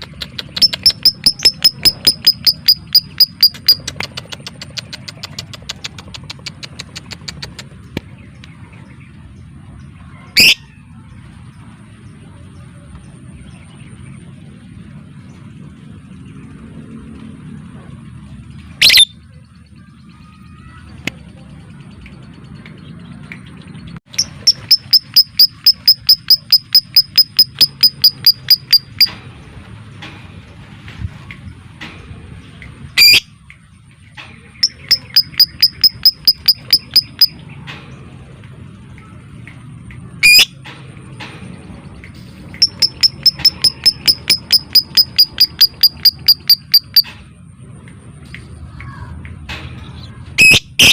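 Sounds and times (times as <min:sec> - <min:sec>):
lovebird fast ticking notes: 0:00.0 - 0:08.0, 0:24.1 - 0:29.1, 0:34.6 - 0:37.4, 0:42.5 - 0:47.0
lovebird shrill rising calls: 0:18.8 - 0:19.1.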